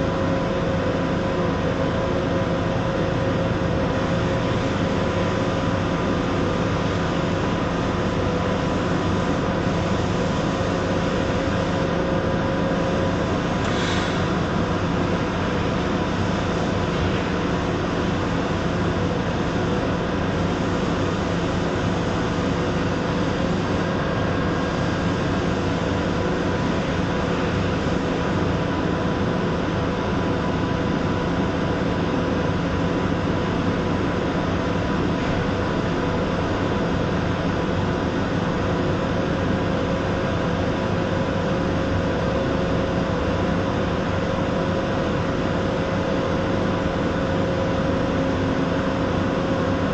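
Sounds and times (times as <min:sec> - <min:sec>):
welding arc hissing and humming: 0:00.0 - 0:30.4.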